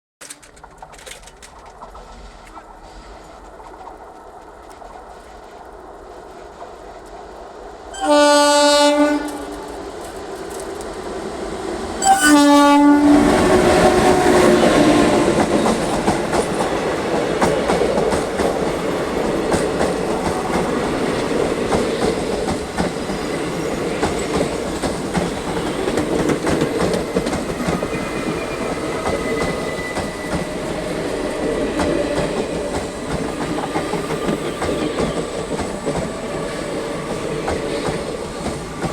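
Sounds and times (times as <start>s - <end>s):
train wheels clattering over rail joints: 0.2s - 5.3s, 13.4s - 36.4s
locomotive horn blasts: 7.9s - 9.8s, 12.0s - 15.4s.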